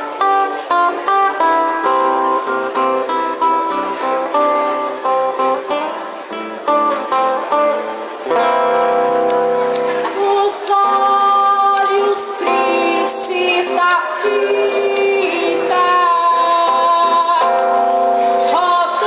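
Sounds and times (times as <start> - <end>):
acoustic guitar playing: 0.0 - 19.0
person singing: 10.0 - 19.0.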